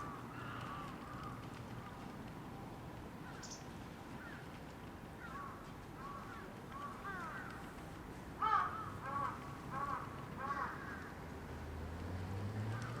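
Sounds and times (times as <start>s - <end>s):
crow cawing: 0.0s - 1.4s, 5.2s - 7.6s, 8.4s - 11.1s.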